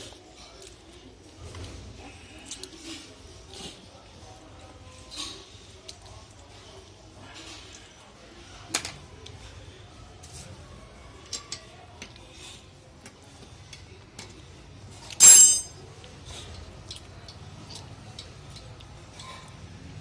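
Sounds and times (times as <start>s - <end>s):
metal tools clinking: 15.1s - 15.8s
loud ringing metal clang: 15.2s - 15.8s.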